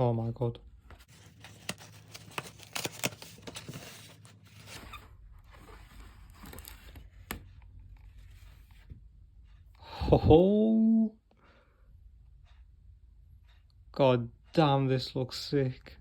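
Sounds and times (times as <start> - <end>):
packaging rustling and crinkling: 1.0 - 7.4.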